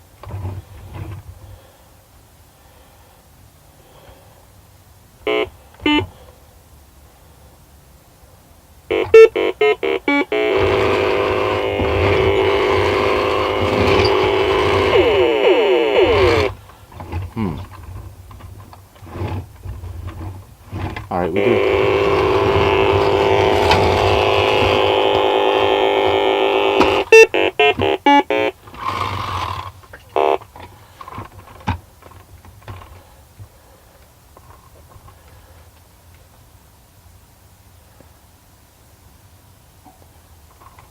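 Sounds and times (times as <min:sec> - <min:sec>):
burst of noise: 0:08.9 - 0:17.8, 0:20.6 - 0:30.4
toy motor whining and rumbling: 0:08.9 - 0:18.1, 0:19.0 - 0:31.6.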